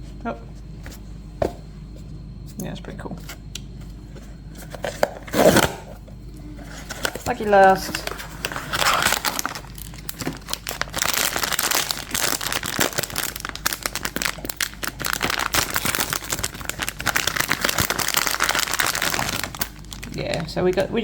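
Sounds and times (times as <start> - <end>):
plastic packaging crinkling: 6.7 - 21.0.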